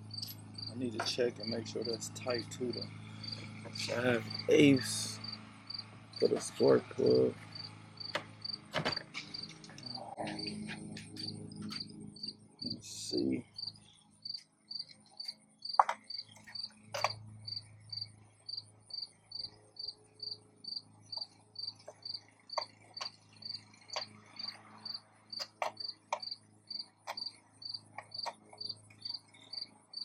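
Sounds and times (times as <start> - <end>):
cricket chirping: 0.0 - 30.0.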